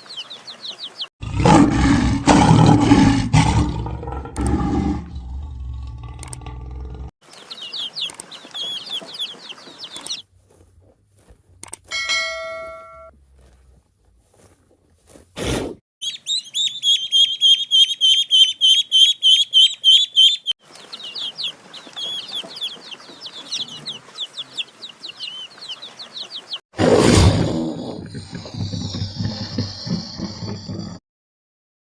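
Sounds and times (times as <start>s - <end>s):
high bird chirps: 7.2s - 10.2s, 16.0s - 26.6s.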